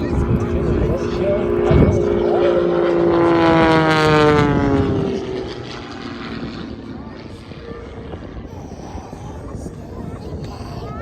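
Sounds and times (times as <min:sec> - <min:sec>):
propeller airplane flying past: 0:00.0 - 0:11.0.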